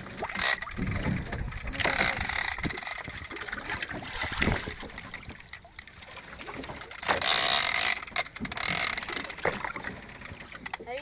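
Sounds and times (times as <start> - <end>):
fishing reel ratchet clicking: 7.0 - 9.4.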